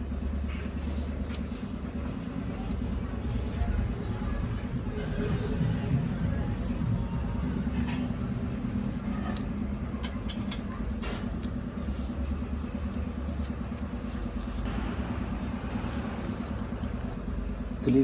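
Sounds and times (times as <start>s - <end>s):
low mechanical rumble: 0.0s - 18.0s.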